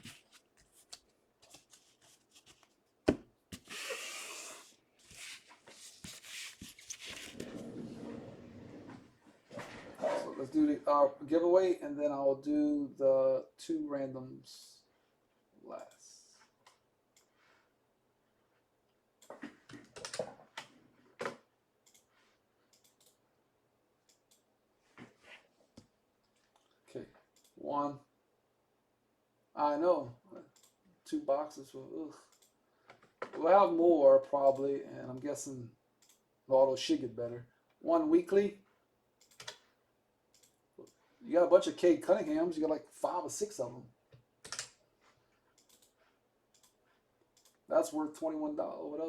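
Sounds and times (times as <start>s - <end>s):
trading cards shuffled: 0.0s - 7.6s
keyboard typing and mouse clicks: 19.2s - 22.1s, 22.7s - 23.2s, 25.8s - 27.6s, 32.3s - 33.4s, 36.0s - 36.2s, 39.2s - 39.7s, 40.3s - 41.0s, 44.1s - 44.8s, 45.5s - 47.6s.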